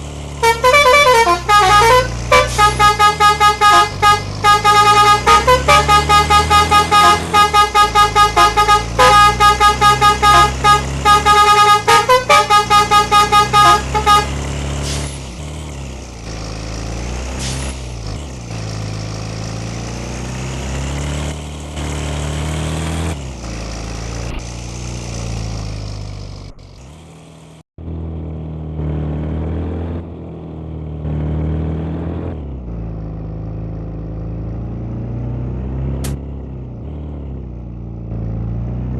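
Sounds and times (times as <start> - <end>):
bus engine running: 0.0 - 38.9
bus multi-tone horn toots: 0.3 - 15.0.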